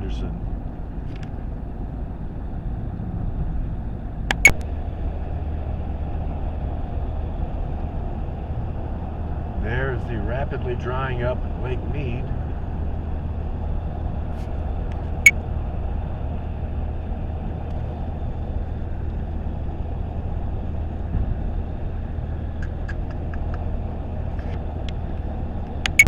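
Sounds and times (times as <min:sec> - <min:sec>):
car road and engine rumble: 0:00.0 - 0:26.0
sharp click: 0:04.3 - 0:04.6
light ticks: 0:22.6 - 0:23.7.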